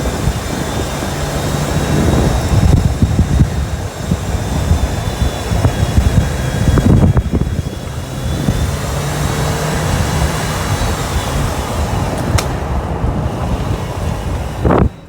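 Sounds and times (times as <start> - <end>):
vehicle engine rumbling: 0.0 - 15.0
sharp click: 12.2 - 12.6.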